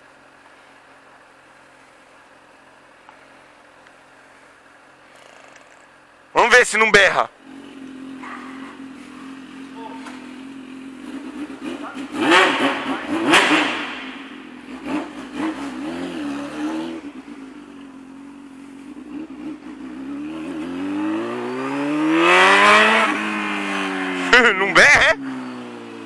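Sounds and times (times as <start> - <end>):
motorcycle engine revving: 7.3 - 26.0.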